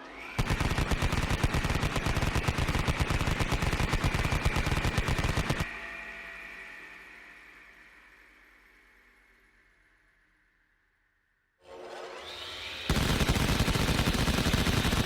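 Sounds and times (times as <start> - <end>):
rotary machine gun firing: 0.4 - 5.7, 12.9 - 15.0.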